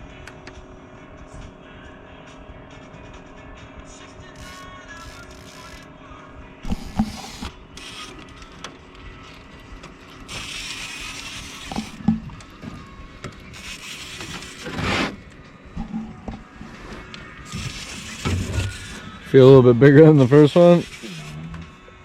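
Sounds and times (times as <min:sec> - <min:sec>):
knocks and thumps in a boat: 0:11.8 - 0:13.5.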